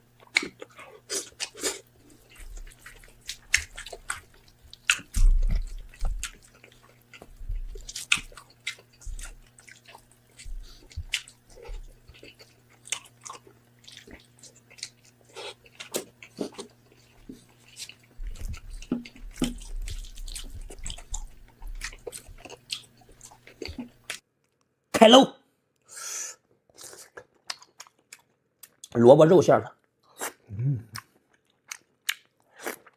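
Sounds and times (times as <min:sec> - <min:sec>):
faint steady hum: 0:00.0 - 0:24.3
wet chewing smacks: 0:00.2 - 0:24.2
heavy chewing thumps: 0:02.2 - 0:12.5, 0:16.3 - 0:24.1.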